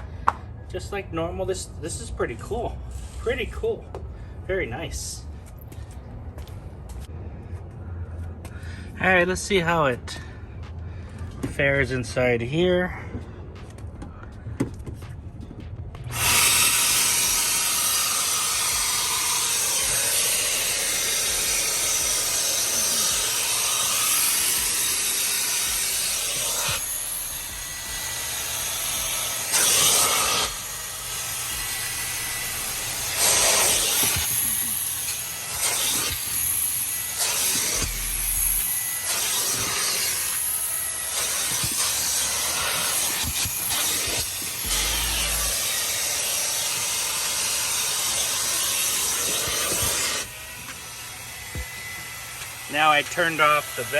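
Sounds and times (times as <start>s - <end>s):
vacuum extractor rushing hiss: 16.2s - 26.8s, 41.2s - 50.4s.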